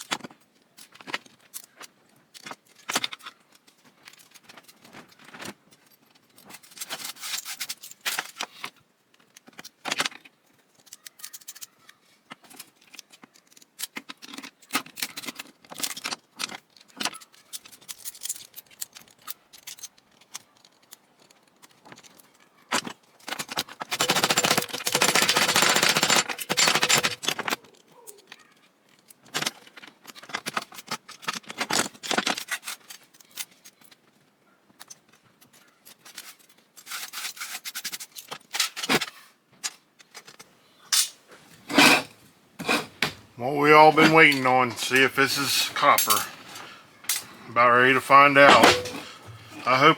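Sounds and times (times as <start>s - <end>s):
food processor parts rattling: 23.4s - 27.6s.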